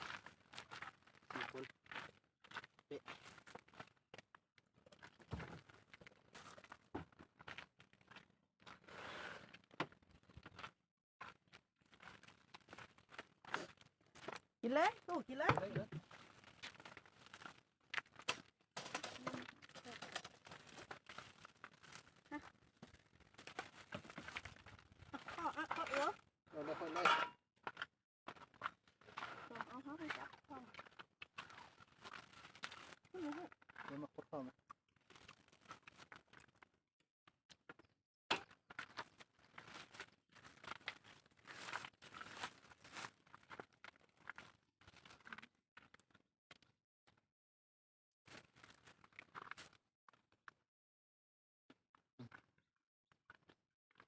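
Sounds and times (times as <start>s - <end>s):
crinkling handling noises: 15.7s - 26.2s, 38.8s - 45.2s.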